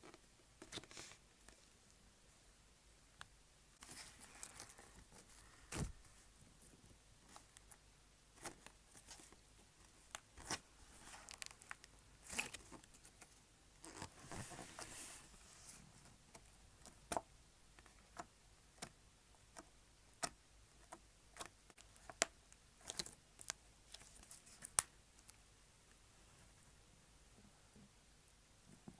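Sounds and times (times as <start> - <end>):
slime squishing with sticky pops: 16.3 - 25.3.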